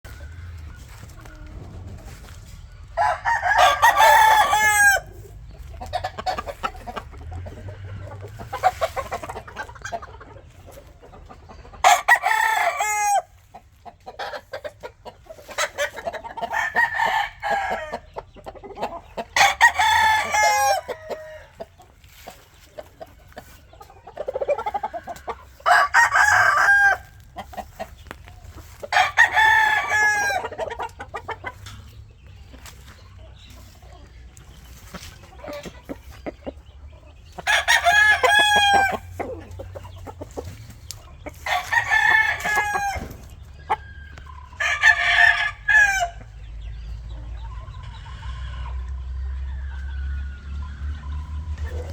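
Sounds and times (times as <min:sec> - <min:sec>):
roosters crowing: 0:00.0 - 0:10.0, 0:11.8 - 0:13.5, 0:15.4 - 0:22.3, 0:24.2 - 0:33.8, 0:34.4 - 0:46.6
chickens clucking: 0:00.0 - 0:51.9.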